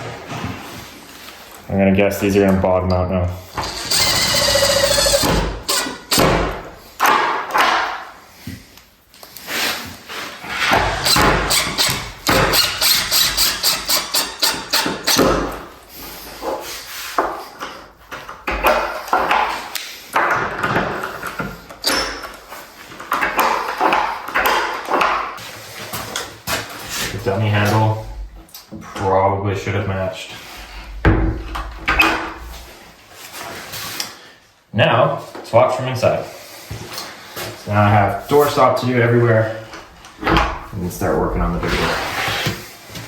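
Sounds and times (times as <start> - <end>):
screws driven into hardware: 3.5 - 6.6, 11.0 - 15.4.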